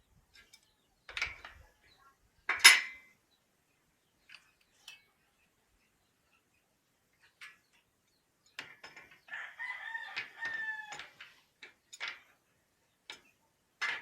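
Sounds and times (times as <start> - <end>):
rooster crowing: 9.3 - 11.1.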